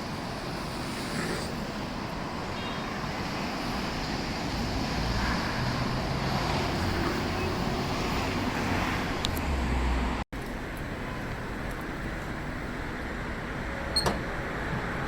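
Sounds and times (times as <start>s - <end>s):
street traffic hum: 0.0s - 15.0s.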